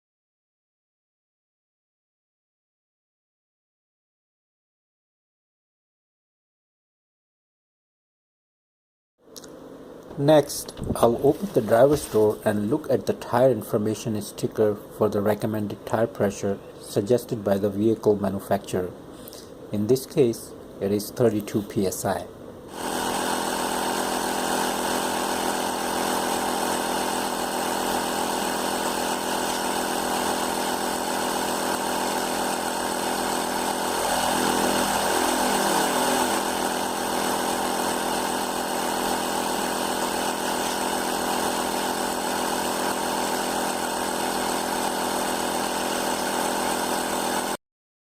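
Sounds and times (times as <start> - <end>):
tire inflator compressor running: 22.7 - 47.6.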